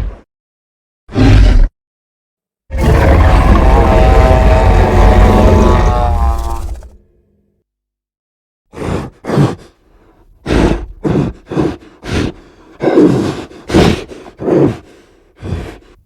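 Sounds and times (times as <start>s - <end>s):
monster grunts and roars: 1.1s - 1.7s, 2.7s - 7.0s, 8.7s - 16.0s.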